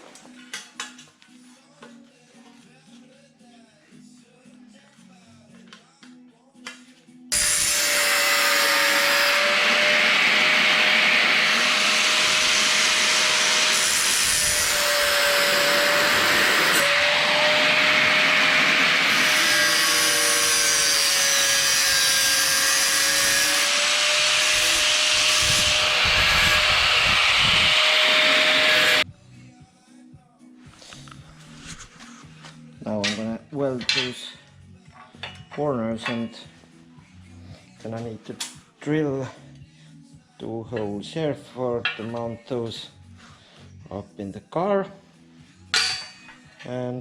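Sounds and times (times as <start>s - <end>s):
electric power tool cutting: 7.3s - 29.0s.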